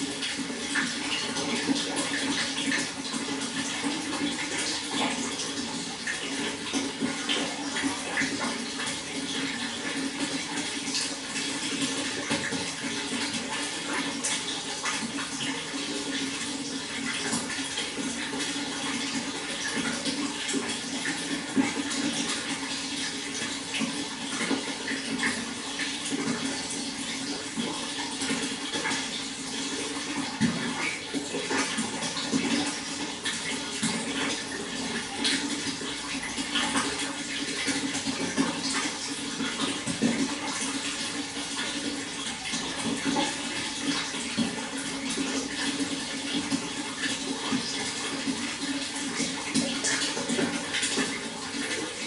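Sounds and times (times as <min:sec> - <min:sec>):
water flowing with splashes: 0:00.0 - 0:52.0.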